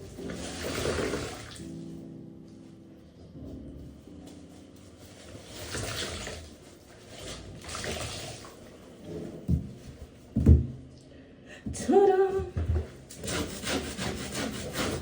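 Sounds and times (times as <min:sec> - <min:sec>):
water splashing: 0:00.0 - 0:01.7, 0:05.5 - 0:08.8.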